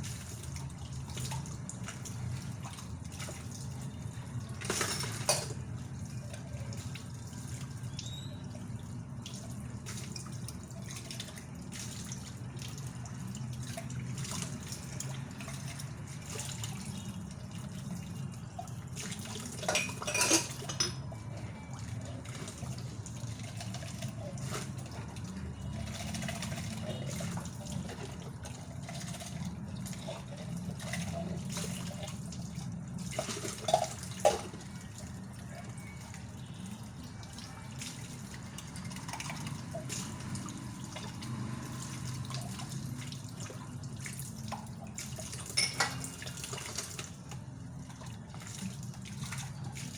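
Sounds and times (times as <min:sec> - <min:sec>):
water running and dripping: 0:00.0 - 0:49.9
dishes knocking and clattering: 0:19.7 - 0:21.0.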